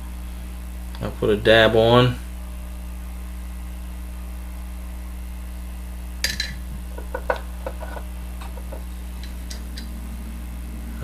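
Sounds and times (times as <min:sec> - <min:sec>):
electrical hum: 0:00.0 - 0:11.0
glass clink: 0:06.3 - 0:07.3.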